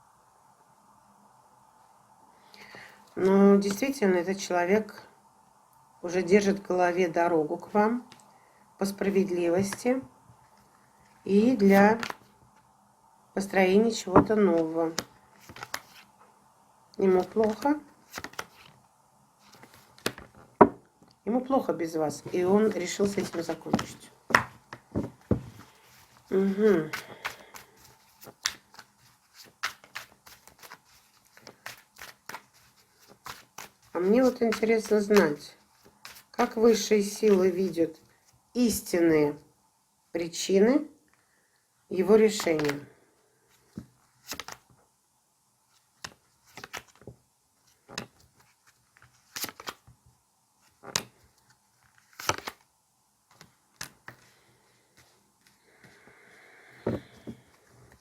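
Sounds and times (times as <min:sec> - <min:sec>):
cards being shuffled: 0:11.4 - 0:12.3, 0:14.2 - 0:16.2, 0:17.0 - 0:18.8, 0:19.4 - 0:20.8, 0:22.1 - 0:37.9, 0:42.1 - 0:42.9, 0:43.5 - 0:44.7, 0:45.7 - 0:50.0, 0:50.6 - 0:52.7, 0:53.3 - 0:54.3.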